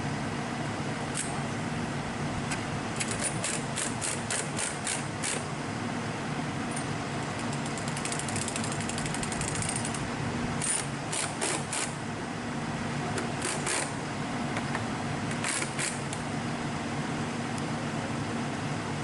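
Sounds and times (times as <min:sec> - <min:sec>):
low engine hum: 0:00.0 - 0:19.0
mechanical ratchet clicking: 0:03.0 - 0:05.4, 0:07.4 - 0:10.0, 0:15.3 - 0:16.2.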